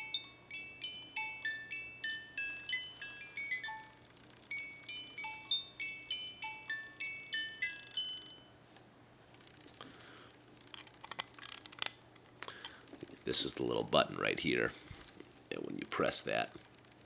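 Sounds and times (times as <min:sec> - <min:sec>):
music box tinkling tune: 0:00.0 - 0:08.5.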